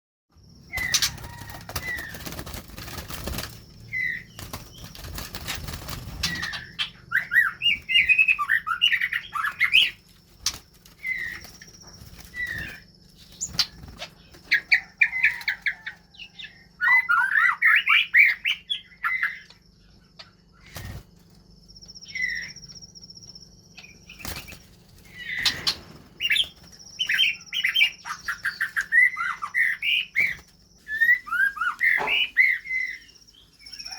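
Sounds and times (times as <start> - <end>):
bird whistled calls and song: 0.7 - 2.4, 3.2 - 5.0, 5.6 - 21.0, 22.0 - 22.8, 23.7 - 33.9
birds flapping wings: 0.8 - 6.8, 10.3 - 14.6, 20.7 - 21.2, 24.1 - 27.2.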